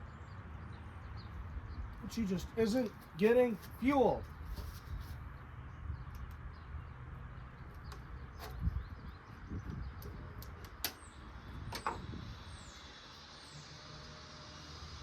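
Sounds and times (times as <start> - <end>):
bird chirping: 5.4 - 13.9.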